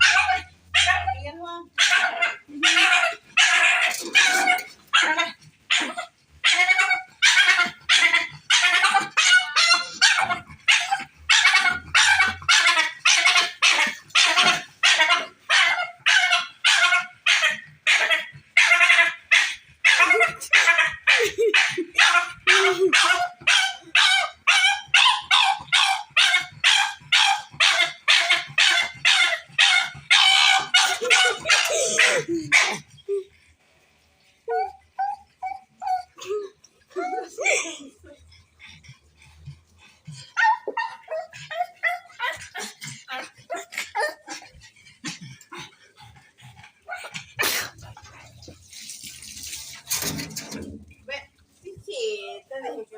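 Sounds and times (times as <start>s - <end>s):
dog barking high-pitched: 0.0s - 1.1s, 1.8s - 32.8s.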